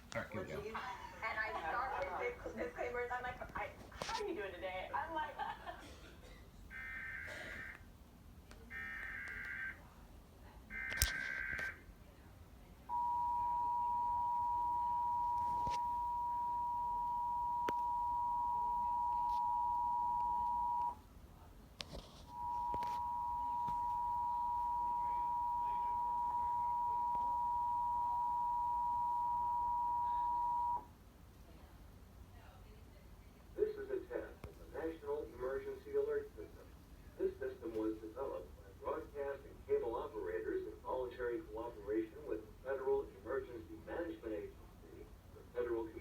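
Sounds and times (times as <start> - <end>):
two-tone attention signal: 12.9 - 21.0, 22.3 - 30.8.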